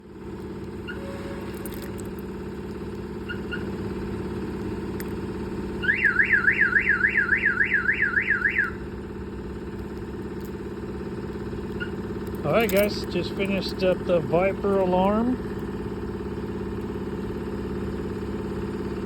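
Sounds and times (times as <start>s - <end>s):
engine idling: 0.0s - 19.0s
car alarm siren warbling: 0.8s - 1.9s, 3.2s - 3.8s, 5.8s - 9.1s, 11.7s - 15.4s.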